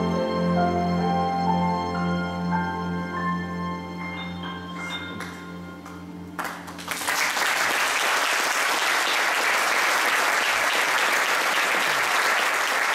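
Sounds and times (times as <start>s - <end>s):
held musical note: 0.0s - 6.9s
audience applauding: 5.2s - 12.9s.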